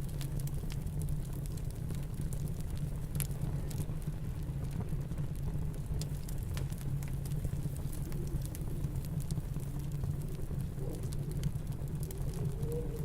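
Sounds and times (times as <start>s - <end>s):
fireplace crackling and popping: 0.0s - 13.0s
snowstorm rumble: 5.9s - 13.0s.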